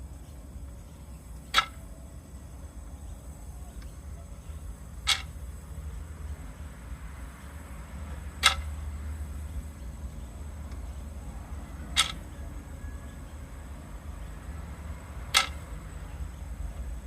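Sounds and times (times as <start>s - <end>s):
low steady hum: 0.0s - 17.0s
gas meter clicking: 15.3s - 15.7s.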